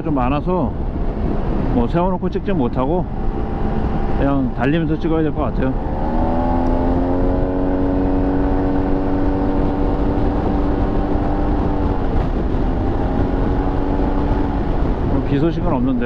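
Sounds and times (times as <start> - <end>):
wind and road noise: 0.0 - 16.0.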